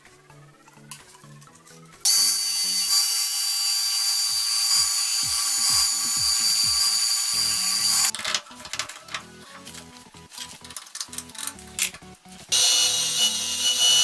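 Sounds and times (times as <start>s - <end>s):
background music: 0.0s - 14.0s
power tool whining: 2.0s - 8.1s, 12.5s - 14.0s.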